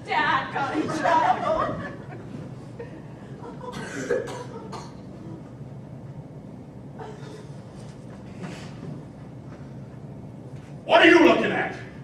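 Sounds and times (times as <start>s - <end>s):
person coughing: 3.7s - 5.1s.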